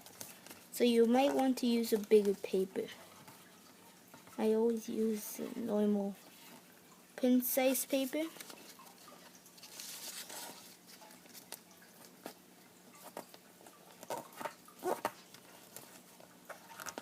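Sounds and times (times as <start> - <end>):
paper rustling and crinkling: 0.0 - 3.4, 8.3 - 17.0.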